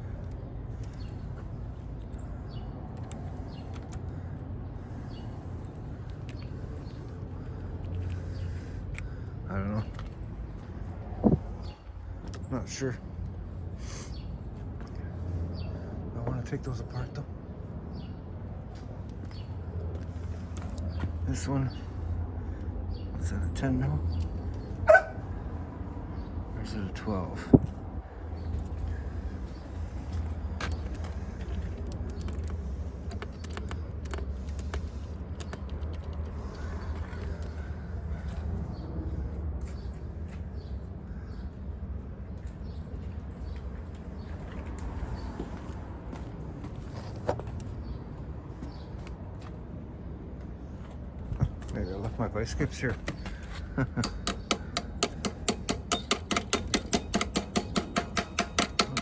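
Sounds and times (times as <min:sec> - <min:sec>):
steady low rumble: 0:00.0 - 0:54.8
key tapping into metal lock: 0:54.0 - 0:59.0
metallic clinks of hand tools: 0:54.0 - 0:59.0.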